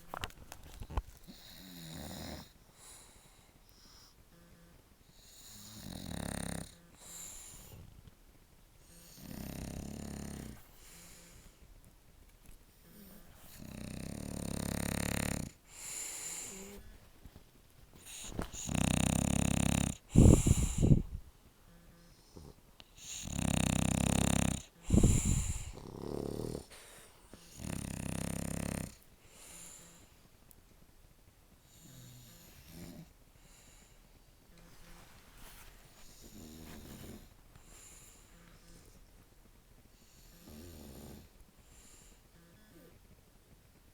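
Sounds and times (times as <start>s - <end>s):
dog snoring: 1.3s - 3.2s, 3.8s - 8.0s, 8.8s - 11.4s, 12.8s - 17.0s, 18.0s - 30.1s, 31.6s - 33.9s, 36.0s - 39.0s, 40.0s - 43.0s
dog breathing softly: 2.4s - 8.0s, 8.8s - 11.8s, 12.6s - 30.4s, 31.6s - 39.2s, 39.9s - 43.2s.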